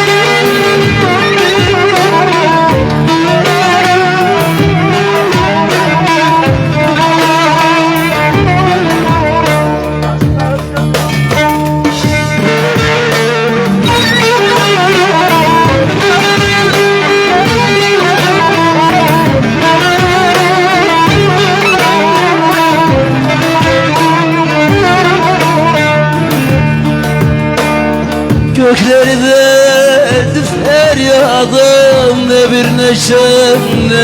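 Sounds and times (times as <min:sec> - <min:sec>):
violin melody: 0:00.0 - 0:10.1, 0:12.3 - 0:26.9
plucked strings: 0:00.0 - 0:34.0.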